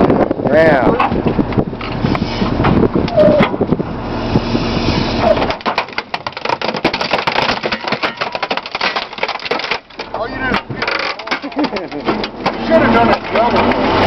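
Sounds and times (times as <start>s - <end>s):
garbage truck compactor running: 1.8s - 14.0s
microwave cracking and crunching: 5.4s - 12.5s.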